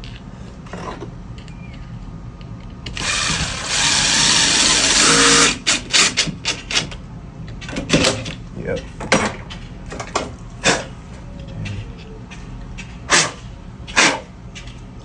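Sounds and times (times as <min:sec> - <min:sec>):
power drill boring into wall: 0:02.9 - 0:06.9.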